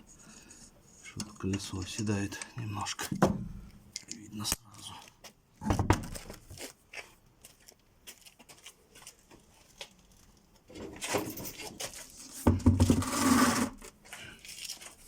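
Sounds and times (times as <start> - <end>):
wheel scraping and rumbling on ground: 10.8 - 13.9.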